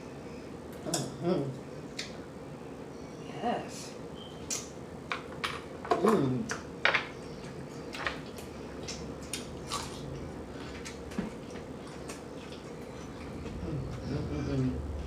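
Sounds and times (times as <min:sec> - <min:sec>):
chewing with wet mouth smacking: 0:07.4 - 0:14.8.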